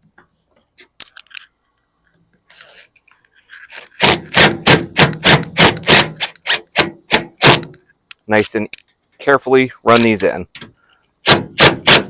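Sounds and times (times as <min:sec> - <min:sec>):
drill driving screw in bursts: 0:03.9 - 0:07.8, 0:11.2 - 0:12.0.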